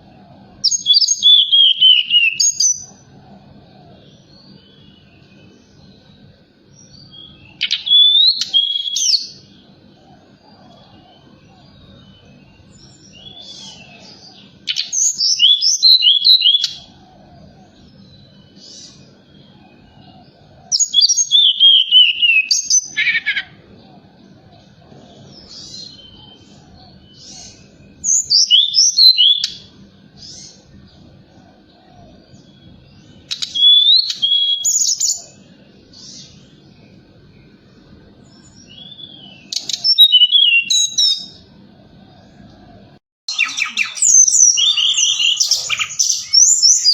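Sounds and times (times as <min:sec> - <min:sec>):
bird singing high whistled notes: 0:00.4 - 0:03.2, 0:06.7 - 0:09.6, 0:10.3 - 0:23.6, 0:25.2 - 0:30.7, 0:32.4 - 0:35.4, 0:38.4 - 0:41.5, 0:43.3 - 0:46.9.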